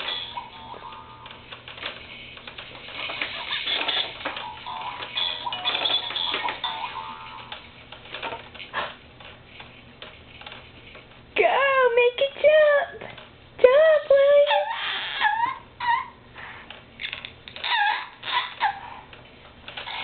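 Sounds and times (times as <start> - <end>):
toy clicks and rattles: 1.2 - 11.2.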